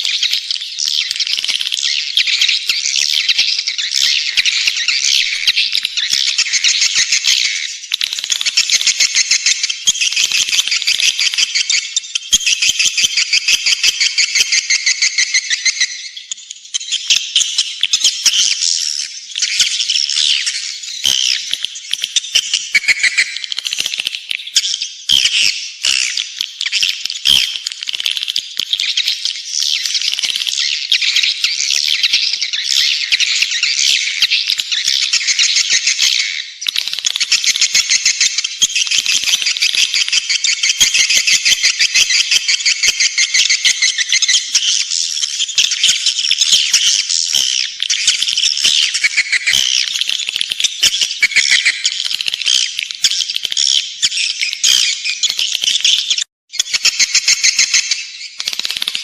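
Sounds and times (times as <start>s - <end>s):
swiftlets twittering chatter: 19.3s - 59.0s.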